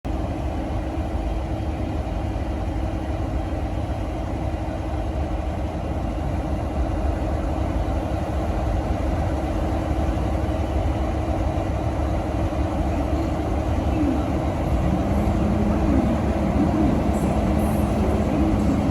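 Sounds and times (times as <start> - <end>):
diesel locomotive idling: 7.1 - 18.9
constant hum: 10.3 - 18.9.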